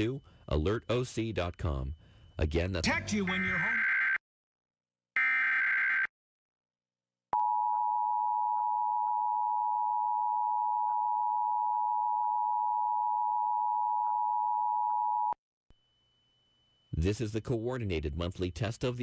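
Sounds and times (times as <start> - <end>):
buzzy digital data screech: 0.0 - 4.2, 5.2 - 6.1, 15.9 - 19.0.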